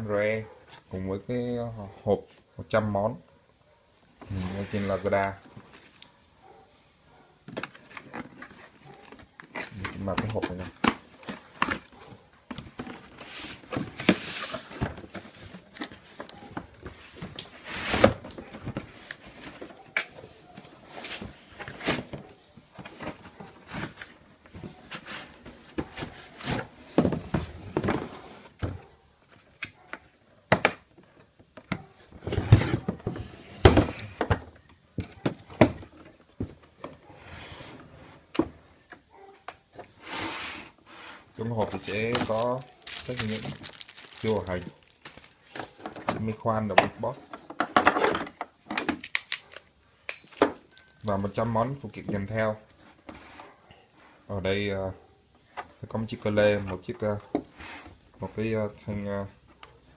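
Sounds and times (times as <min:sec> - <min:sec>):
knocks thunks and scrapes of box contents: 0:21.0 - 0:28.8.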